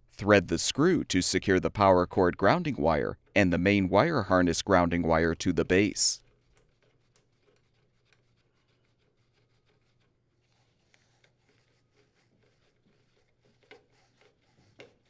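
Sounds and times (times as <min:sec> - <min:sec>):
screw ticking and rubbing: 0:03.2 - 0:15.0.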